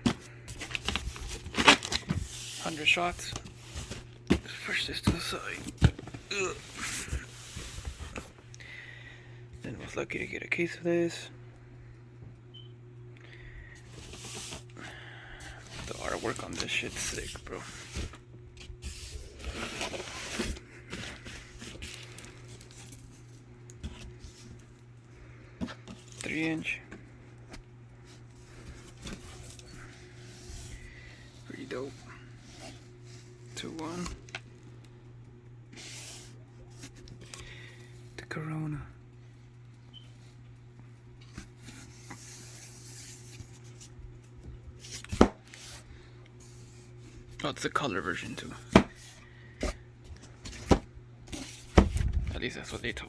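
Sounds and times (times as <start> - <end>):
packaging rustling: 0.0 - 8.2
cardboard packaging rustling: 0.0 - 8.4, 15.5 - 24.7
steady low hum: 0.0 - 53.0.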